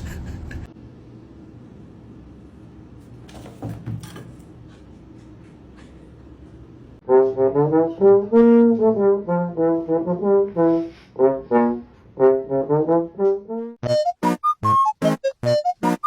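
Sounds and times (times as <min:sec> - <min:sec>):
brass melody: 0:07.0 - 0:16.0.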